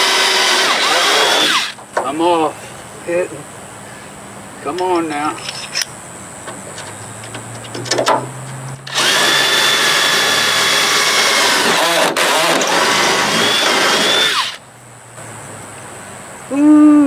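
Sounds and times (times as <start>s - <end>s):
electric drill boring wood: 0.0s - 1.8s, 8.9s - 14.6s.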